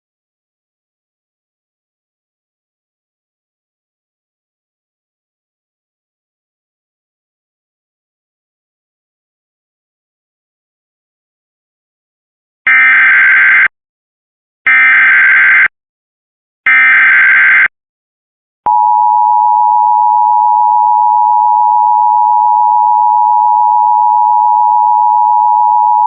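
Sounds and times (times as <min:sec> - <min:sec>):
steady loud attention tone: 0:18.7 - 0:26.0.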